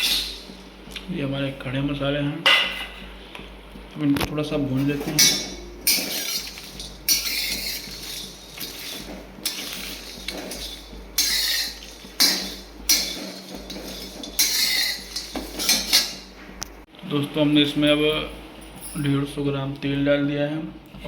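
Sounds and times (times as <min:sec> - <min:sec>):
metal utensils clinking and scraping: 0:00.0 - 0:00.5, 0:04.8 - 0:16.4.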